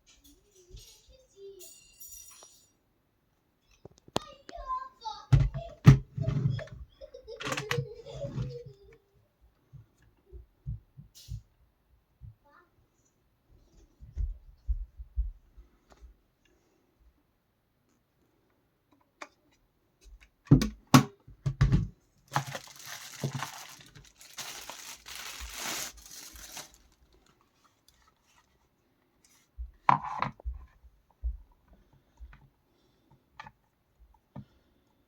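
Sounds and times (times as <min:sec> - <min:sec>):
packaging tearing and crinkling: 0:22.3 - 0:27.3.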